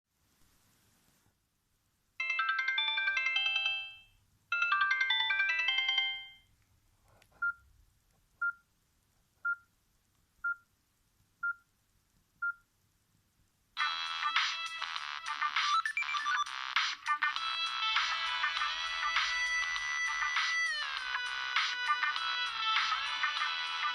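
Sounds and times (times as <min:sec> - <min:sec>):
busy phone ringtone: 0:02.2 - 0:06.5, 0:17.4 - 0:23.9
tinkling ringtone melody: 0:02.2 - 0:06.5.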